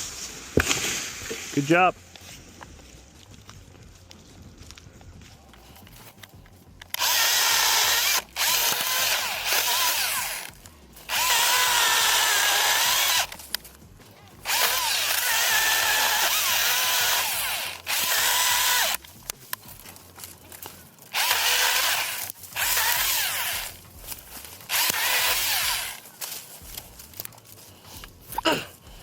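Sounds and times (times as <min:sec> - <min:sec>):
battery chainsaw cutting wood: 0:06.8 - 0:13.7, 0:14.3 - 0:27.3.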